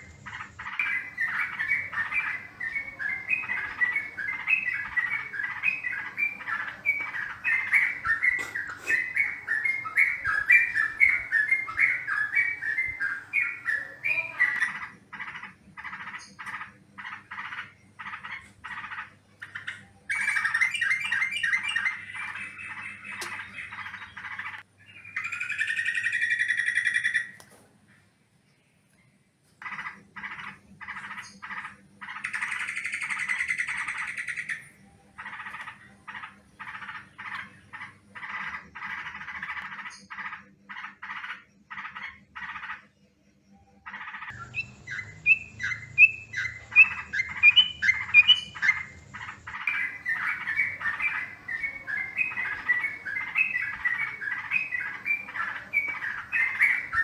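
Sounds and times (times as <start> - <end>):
bird chattering calls: 0.0 - 24.6, 43.9 - 57.0.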